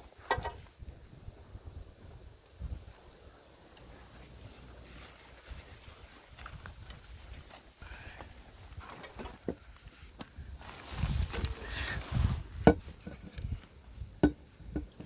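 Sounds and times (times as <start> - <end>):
wind buffeting microphone: 0.1 - 3.5, 5.4 - 7.5, 9.4 - 15.0
footsteps on trail: 3.8 - 12.5
walking stick knocking: 12.6 - 13.4, 14.2 - 15.0.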